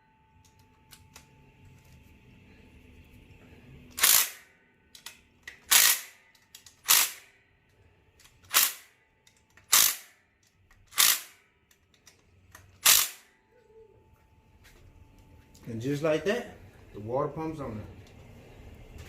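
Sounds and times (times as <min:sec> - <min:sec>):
power tool bursts: 0:04.0 - 0:04.4, 0:05.7 - 0:06.1, 0:09.7 - 0:10.1, 0:10.9 - 0:11.4, 0:12.8 - 0:13.3.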